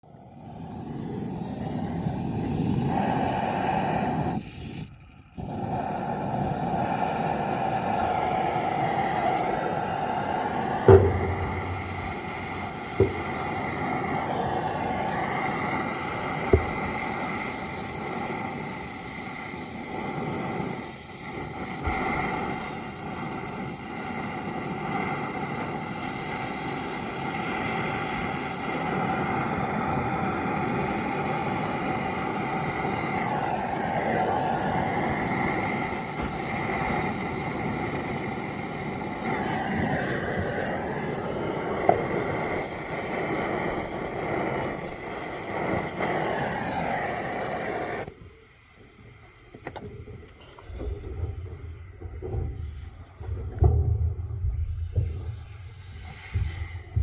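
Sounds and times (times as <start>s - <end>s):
welding hissing buzz: 0.2s - 57.0s.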